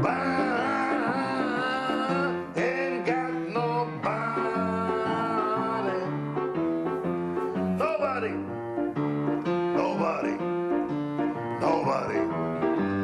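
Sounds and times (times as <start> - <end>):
person singing long notes: 0.0 - 6.2
instrumental accompaniment: 0.0 - 13.0.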